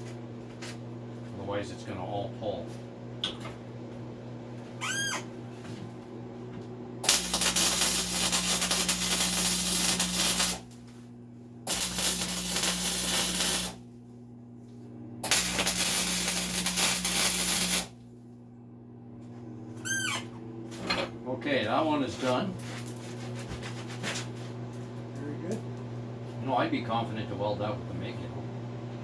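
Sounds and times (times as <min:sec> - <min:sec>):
welder arc crackling: 0:07.0 - 0:10.8, 0:11.7 - 0:13.9, 0:15.2 - 0:18.0.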